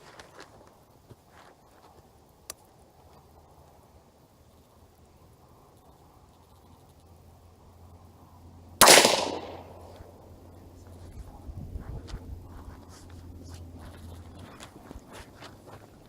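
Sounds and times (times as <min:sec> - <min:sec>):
rifle shot: 0:08.8 - 0:10.1.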